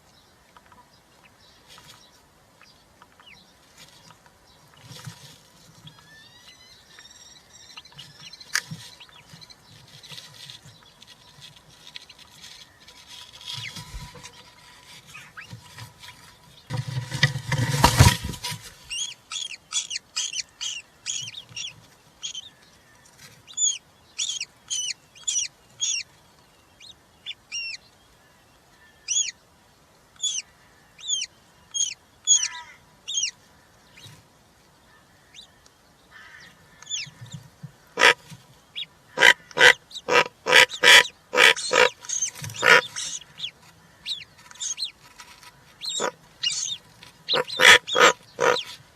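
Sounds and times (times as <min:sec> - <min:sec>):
harsh rasping calls: 0:05.8 - 0:22.6, 0:23.5 - 0:26.1, 0:28.9 - 0:29.3, 0:30.2 - 0:33.4, 0:35.2 - 0:48.9
chicks thin rising calls: 0:18.9 - 0:22.5, 0:38.0 - 0:48.8.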